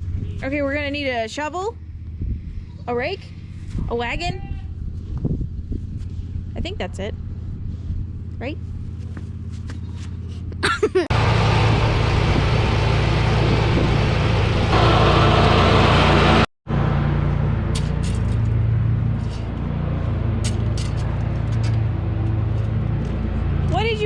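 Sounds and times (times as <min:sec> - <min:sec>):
vehicle engine running: 0:05.5 - 0:24.0.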